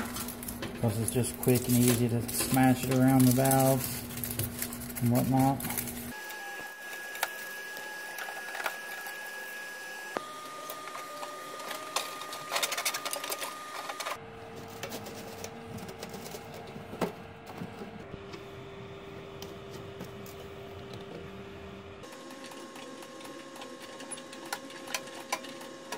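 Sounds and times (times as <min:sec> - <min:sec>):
metal parts clicking and rattling: 0:00.0 - 0:06.0.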